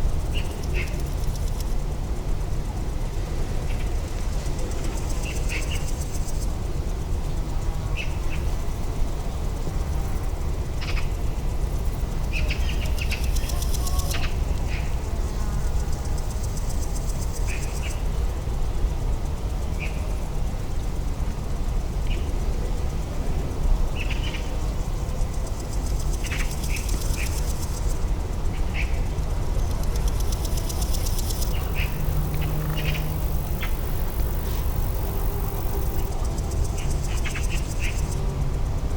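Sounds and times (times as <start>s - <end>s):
steady low rumble: 24.7s - 38.9s.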